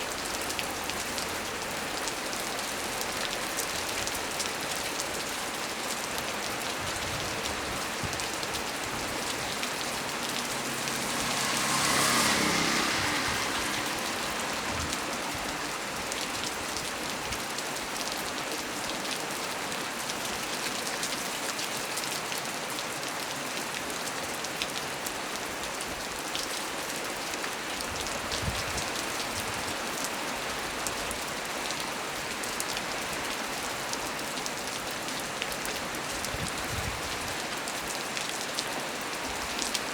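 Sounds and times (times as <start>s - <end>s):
heavy rain on leaves: 0.0s - 39.9s
rushing swell: 8.6s - 16.3s.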